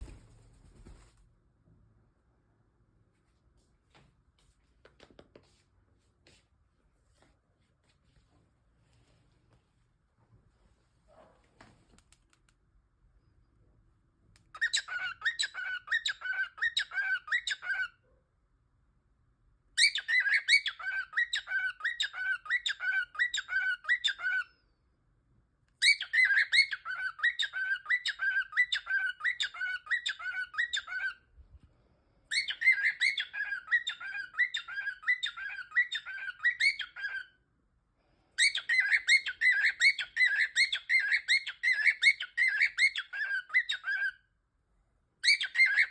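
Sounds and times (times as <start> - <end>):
cockatiel calling: 14.5 - 18.0, 19.8 - 24.6, 25.8 - 31.2, 32.3 - 37.4, 38.4 - 44.2, 45.2 - 45.9.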